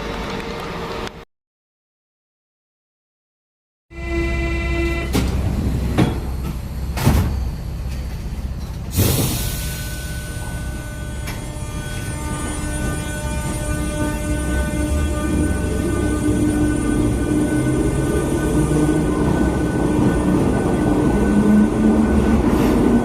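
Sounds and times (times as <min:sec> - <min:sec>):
train running: 0:00.0 - 0:01.2, 0:04.0 - 0:23.0
air hiss burst: 0:08.9 - 0:09.9.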